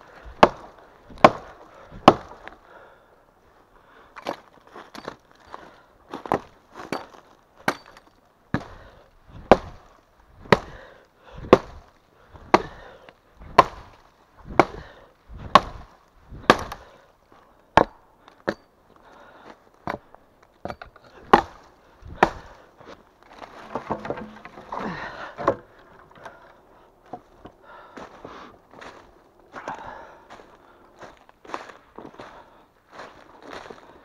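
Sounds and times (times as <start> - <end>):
axe chopping wood: 0.3 - 2.4, 9.4 - 9.8, 10.5 - 10.8, 11.4 - 11.8, 12.4 - 12.8, 13.4 - 16.8, 20.6 - 22.6, 23.4 - 25.7.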